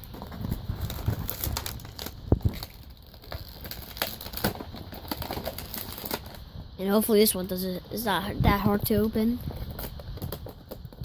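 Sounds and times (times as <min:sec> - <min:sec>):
packaging clicks: 0:00.0 - 0:06.4
plastic packaging crinkling: 0:00.0 - 0:06.6, 0:08.8 - 0:11.0.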